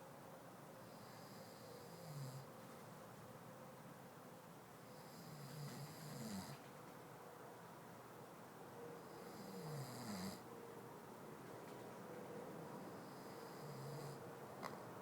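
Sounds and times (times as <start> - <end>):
man snoring: 1.0 - 2.5, 5.0 - 6.6, 9.3 - 10.4, 13.1 - 14.2.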